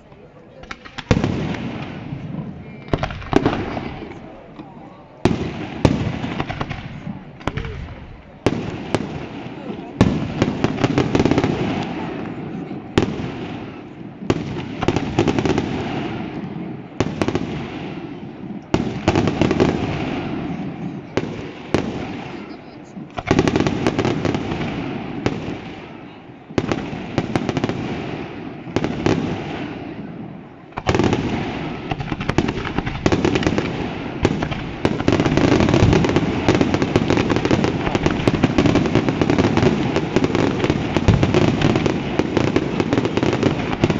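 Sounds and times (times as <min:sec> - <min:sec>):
fireworks bangs and crackling: 0:00.0 - 0:43.9.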